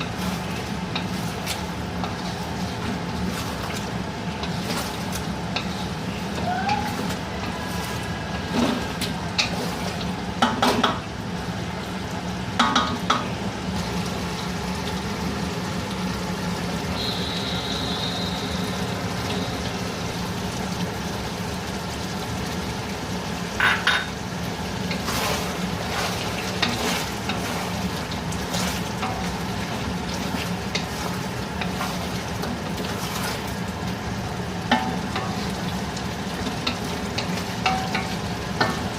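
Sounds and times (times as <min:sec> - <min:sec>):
utensil stirring and scraping: 0:00.0 - 0:10.0, 0:24.9 - 0:33.6
food sizzling in a pan: 0:00.0 - 0:38.9
utensil knocking against pan: 0:23.6 - 0:24.2.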